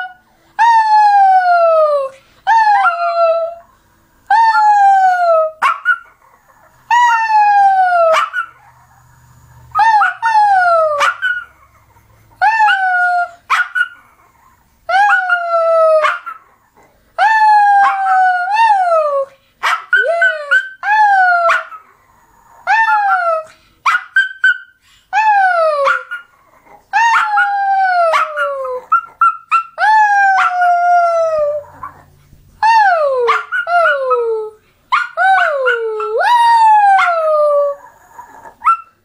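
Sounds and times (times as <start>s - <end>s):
dog howling: 17.2s - 19.3s, 26.9s - 32.0s, 32.6s - 38.9s.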